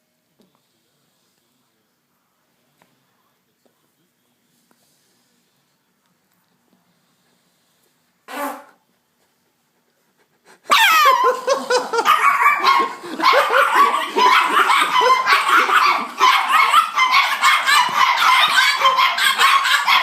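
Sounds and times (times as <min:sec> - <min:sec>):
small dog barking and yapping: 0:10.7 - 0:20.0.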